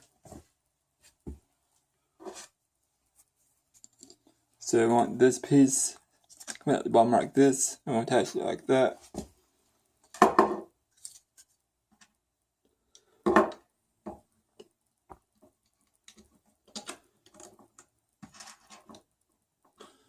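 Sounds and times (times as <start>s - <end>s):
parts handling sounds: 6.0s - 6.8s, 10.9s - 12.2s
plastic parts clicking and knocking: 13.0s - 19.8s.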